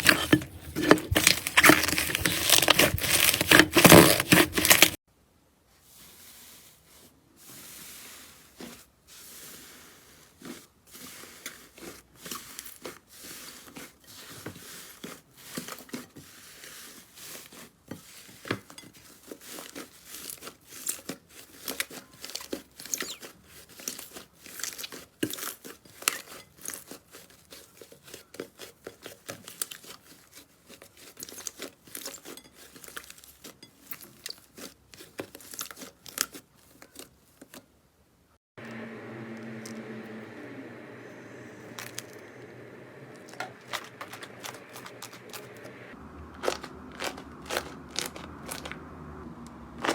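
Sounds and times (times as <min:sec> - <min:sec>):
slime squishing and stretching: 0:00.0 - 0:05.0, 0:19.2 - 0:37.4, 0:43.2 - 0:49.9.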